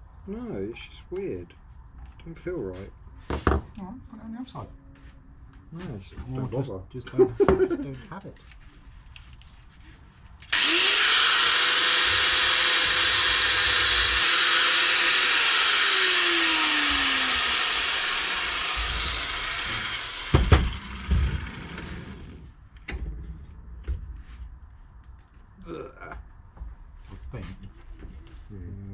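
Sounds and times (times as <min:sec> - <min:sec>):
angle grinder cutting metal: 0:10.5 - 0:22.4.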